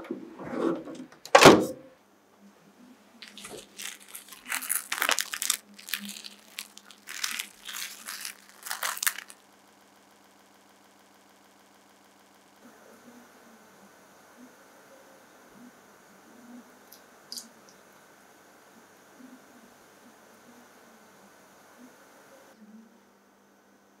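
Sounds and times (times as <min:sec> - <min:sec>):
plastic cling wrap crinkling: 0:03.2 - 0:09.4.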